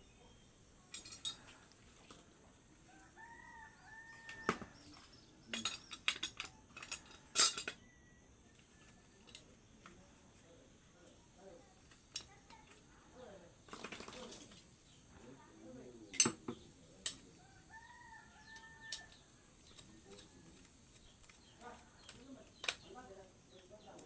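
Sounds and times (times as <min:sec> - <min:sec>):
hard objects clinking and clattering: 0:00.9 - 0:01.8, 0:04.3 - 0:07.8.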